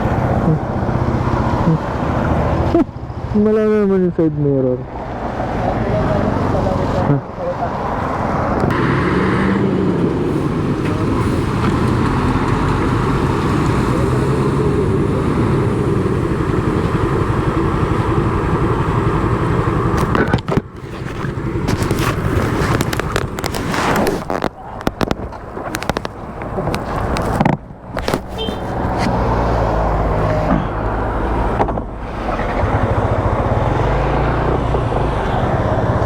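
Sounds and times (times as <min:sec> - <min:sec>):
motor scooter engine: 0:08.7 - 0:36.0.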